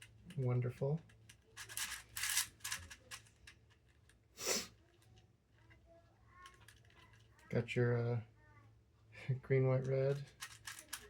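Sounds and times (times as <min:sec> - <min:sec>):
plastic puzzle scraping: 0:01.2 - 0:04.1, 0:10.1 - 0:11.0.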